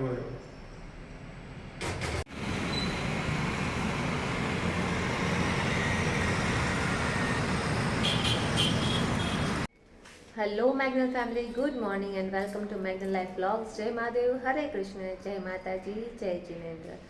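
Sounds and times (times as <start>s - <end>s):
road traffic noise: 0.4s - 9.7s.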